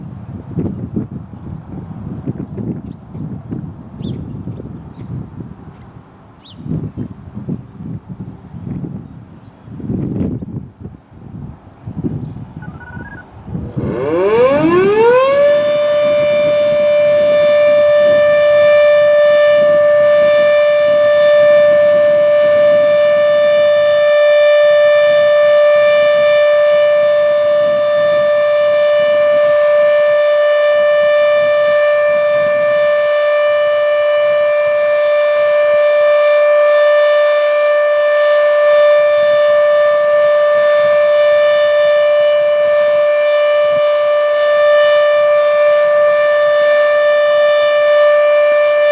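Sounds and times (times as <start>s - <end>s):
warning siren winding up: 12.6s - 48.9s.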